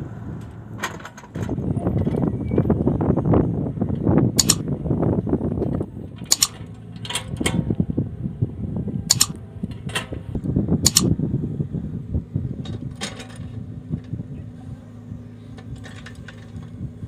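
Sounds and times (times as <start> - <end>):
diesel engine running: 0.0 - 17.0
sharp metallic clinks: 4.4 - 4.6, 6.3 - 6.6, 9.1 - 9.4, 10.9 - 11.1.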